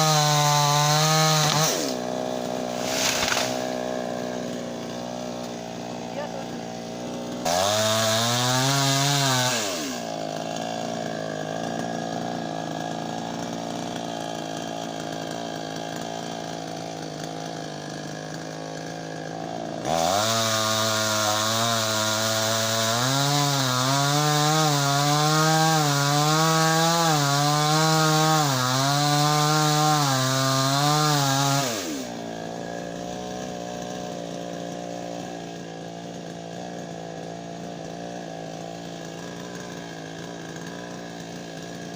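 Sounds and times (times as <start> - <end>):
chainsaw idling and revving: 0.0 - 41.9.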